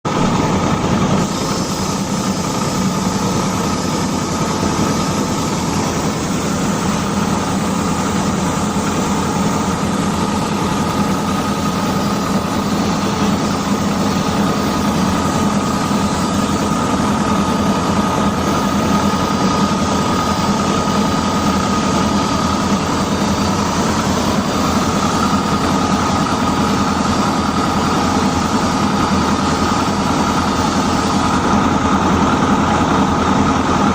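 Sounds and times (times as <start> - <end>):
metal-cutting machine whining: 0.1 - 33.9.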